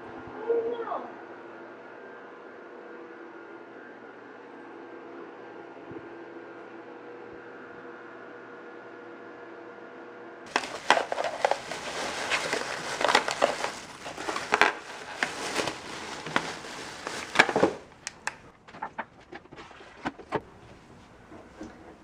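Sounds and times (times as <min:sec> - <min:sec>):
plastic packaging crinkling: 0:10.5 - 0:18.5.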